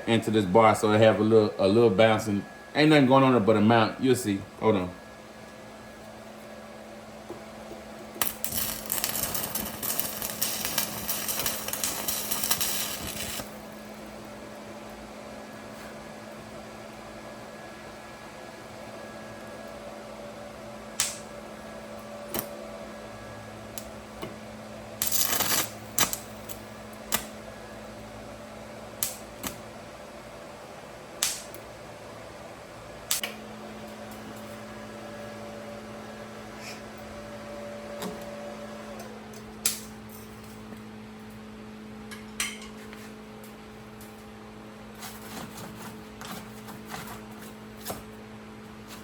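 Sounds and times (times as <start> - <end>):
welder electrical hum: 0.0 - 49.0
crackling burst: 8.2 - 13.6.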